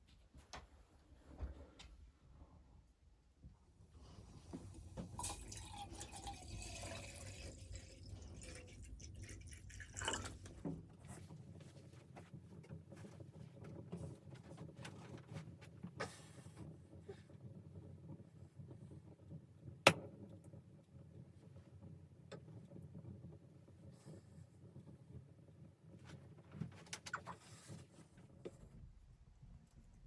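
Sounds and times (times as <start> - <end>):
liquid dripping and pouring: 4.3 - 13.5.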